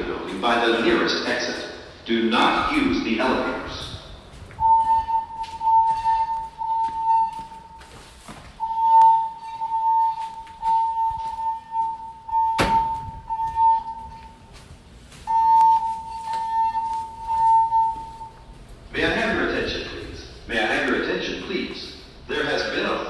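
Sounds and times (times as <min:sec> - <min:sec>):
high alarm tone: 0:02.2 - 0:20.2.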